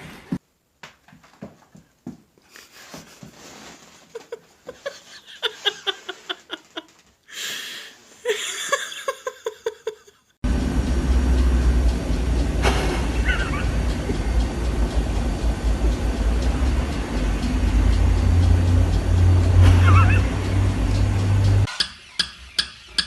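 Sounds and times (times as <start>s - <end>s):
person laughing high-pitched: 4.0s - 10.3s, 13.2s - 14.3s, 19.6s - 20.4s
loud low rumble: 10.4s - 21.7s.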